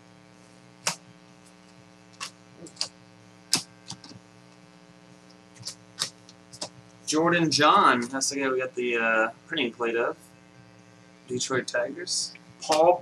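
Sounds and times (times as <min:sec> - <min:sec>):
electrical mains hum: 0:00.0 - 0:13.0
cards flicking and slapping: 0:00.8 - 0:01.1, 0:02.1 - 0:04.3, 0:05.2 - 0:06.9, 0:12.4 - 0:13.0.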